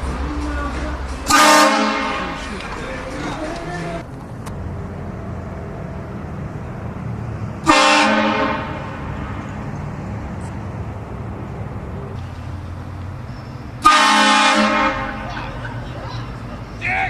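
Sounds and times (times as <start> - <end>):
train horn chord blast: 1.3 - 2.4, 7.6 - 9.0, 13.8 - 15.2.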